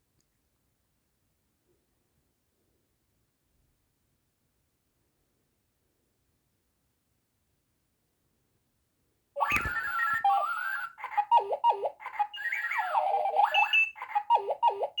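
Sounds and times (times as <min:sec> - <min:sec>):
warbling electronic alarm beeps: 0:11.3 - 0:15.0.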